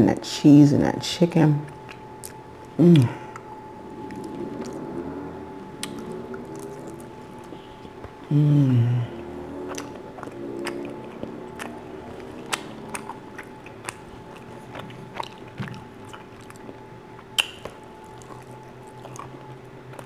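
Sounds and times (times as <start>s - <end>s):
faint steady hum: 0.0s - 20.0s
crunchy bread chewing: 1.7s - 20.0s
mouth clicks: 17.4s - 18.3s.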